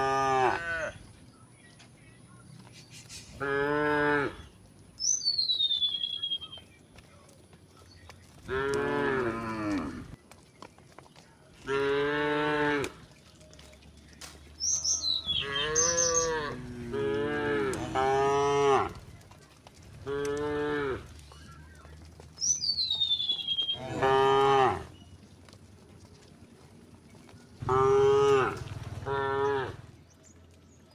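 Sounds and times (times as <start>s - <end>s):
cows mooing: 0.0s - 1.1s, 3.3s - 4.6s, 8.2s - 10.2s, 11.6s - 22.2s, 22.8s - 25.3s, 27.1s - 30.0s.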